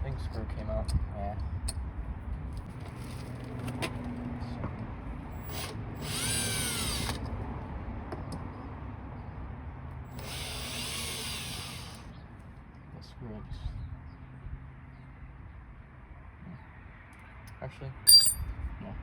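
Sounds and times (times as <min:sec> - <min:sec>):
power drill whirring: 0:05.4 - 0:07.2, 0:10.1 - 0:12.0.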